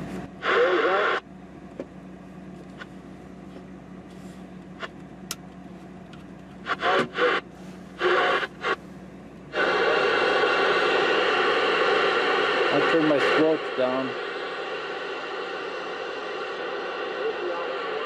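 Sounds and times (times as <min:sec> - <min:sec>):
loud static hiss: 0:00.0 - 0:01.3, 0:06.5 - 0:08.9, 0:09.5 - 0:18.0
low steady hum: 0:00.0 - 0:18.0
noisy radio bursts: 0:00.4 - 0:01.2, 0:06.6 - 0:08.8, 0:09.5 - 0:18.0.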